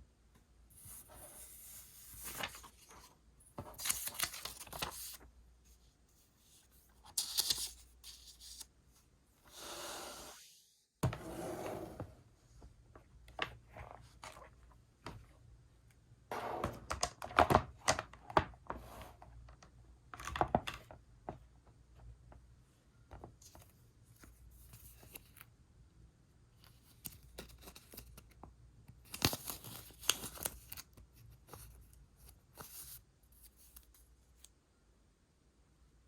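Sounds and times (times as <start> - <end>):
paper rustling and crinkling: 0.8 - 5.3, 6.4 - 8.7, 29.0 - 34.1.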